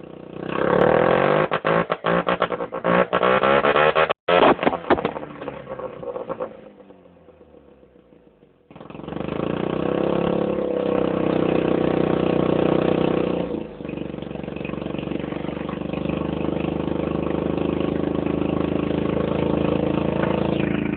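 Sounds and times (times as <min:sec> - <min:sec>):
rotary engine idling: 0:11.0 - 0:20.9.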